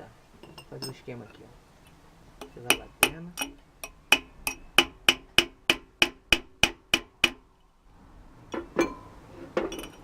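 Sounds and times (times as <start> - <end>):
hammer tapping metal: 2.4 - 7.4.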